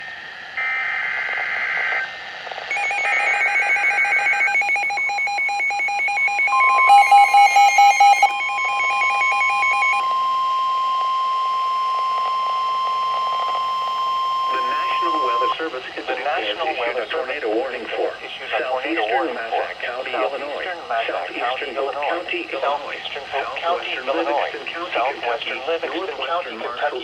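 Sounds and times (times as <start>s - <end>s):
steady single alarm tone: 2.7s - 15.5s
rapid electronic alarm beeping: 2.7s - 15.6s
screechy data tones: 2.7s - 15.6s.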